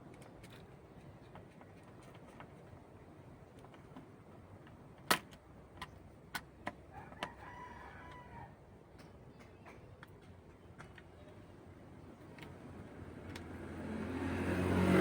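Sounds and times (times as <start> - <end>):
clicks and taps handling screws: 0.0 - 2.8
rooster crowing: 6.9 - 8.6.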